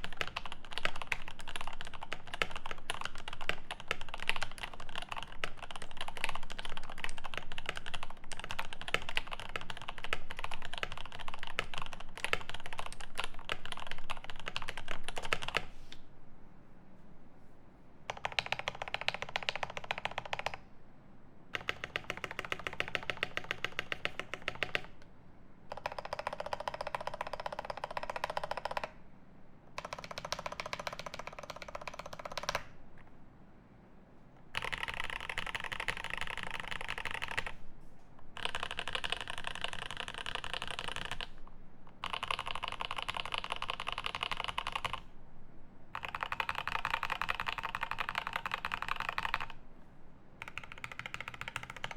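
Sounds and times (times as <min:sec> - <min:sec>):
fast typing on mechanical keyboard: 0:00.0 - 0:15.7, 0:18.1 - 0:20.6, 0:21.5 - 0:25.0, 0:25.7 - 0:29.0, 0:29.8 - 0:32.7, 0:34.5 - 0:37.6, 0:38.3 - 0:41.4, 0:42.0 - 0:45.1, 0:45.9 - 0:49.6, 0:50.4 - 0:51.9.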